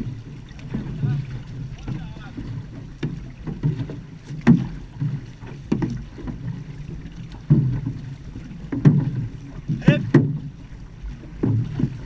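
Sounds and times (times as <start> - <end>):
paddles pulling through water: 0.0 - 12.0
rush of water and wind: 0.0 - 12.0.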